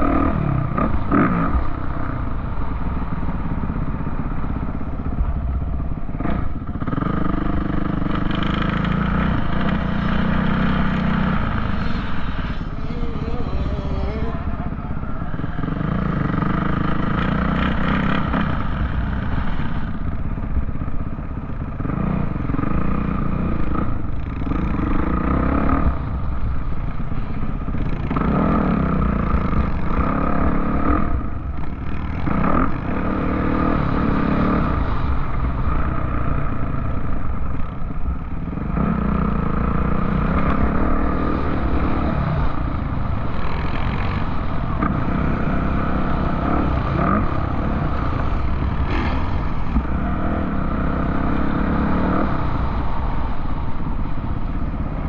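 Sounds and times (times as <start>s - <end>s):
vehicle engine revving: 6.0s - 20.0s.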